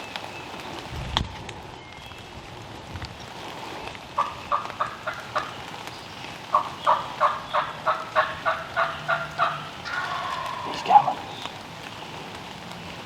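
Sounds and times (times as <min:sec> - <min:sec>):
turkey yelps: 0:06.5 - 0:11.4.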